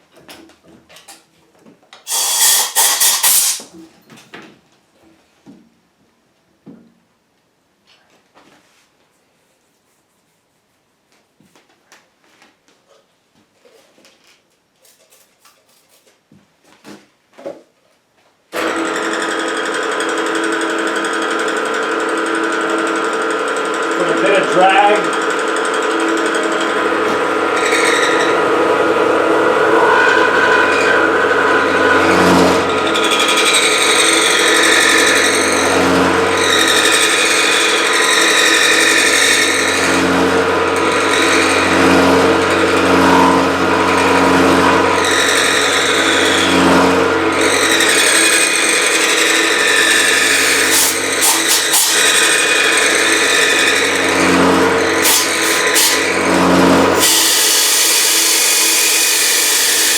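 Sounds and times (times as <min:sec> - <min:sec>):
milling spindle motor running: 0:18.6 - 0:59.9
cutter chatter on metal: 0:23.9 - 0:59.9.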